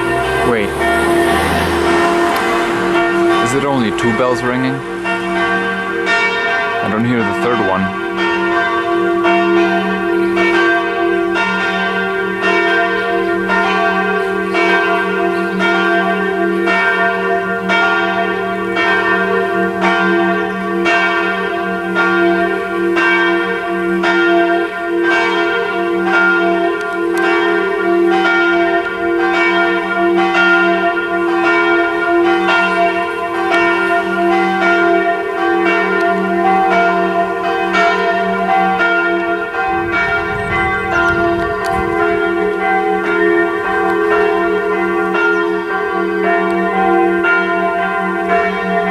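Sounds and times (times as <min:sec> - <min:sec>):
sustained bell hum: 0:00.0 - 0:08.7, 0:30.2 - 0:47.0
church bells ringing: 0:00.0 - 0:48.9.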